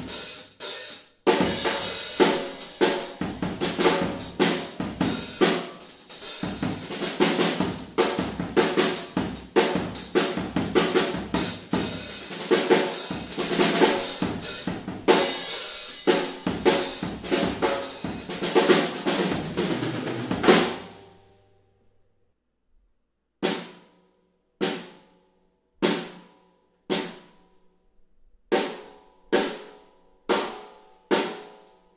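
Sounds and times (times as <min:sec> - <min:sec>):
cymbals: 0:00.0 - 0:09.8, 0:10.9 - 0:21.4
snare drum: 0:00.8 - 0:21.0
bass drum: 0:01.3 - 0:05.6, 0:06.4 - 0:21.1.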